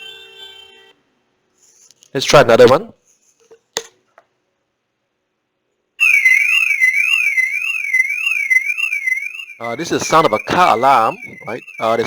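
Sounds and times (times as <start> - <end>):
car alarm warbling siren: 6.0 - 12.0.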